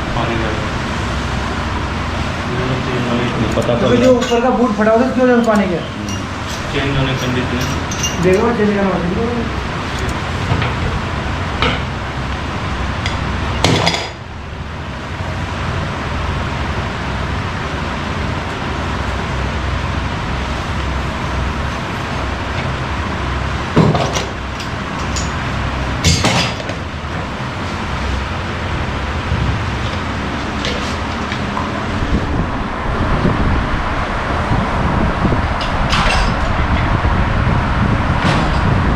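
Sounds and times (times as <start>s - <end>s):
steady background noise: 0.0s - 38.9s
metal tools clinking: 3.1s - 8.8s, 23.8s - 26.8s, 29.8s - 31.9s.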